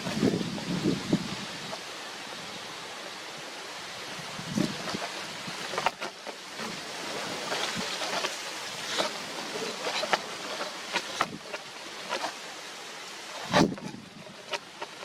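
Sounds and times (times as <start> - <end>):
wind rushing: 0.0 - 1.8
rustling: 4.2 - 15.0.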